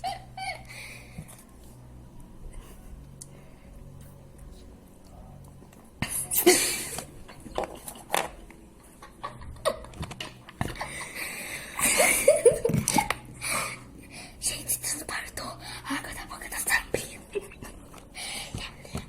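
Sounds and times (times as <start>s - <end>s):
person giggling: 0.0s - 0.8s, 10.6s - 13.6s.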